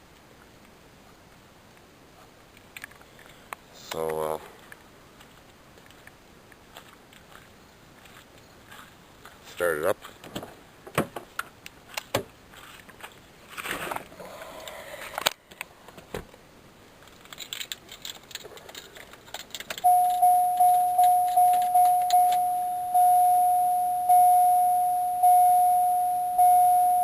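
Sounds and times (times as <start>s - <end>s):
keys jangling: 17.2s - 22.5s
dashboard warning chime dinging: 19.8s - 27.0s.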